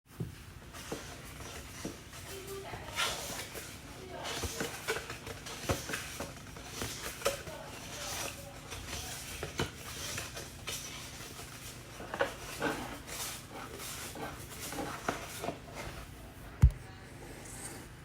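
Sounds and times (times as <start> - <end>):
paper rustling: 0.7 - 16.4
light taps: 16.6 - 16.9.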